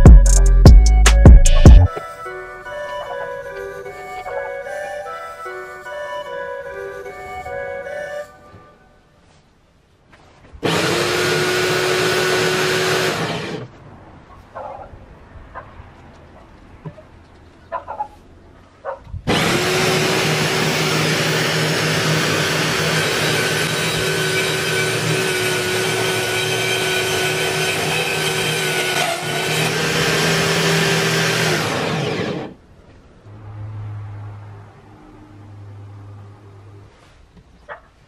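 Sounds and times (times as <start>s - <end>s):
electric power tool whining: 10.6s - 13.7s, 19.3s - 32.6s.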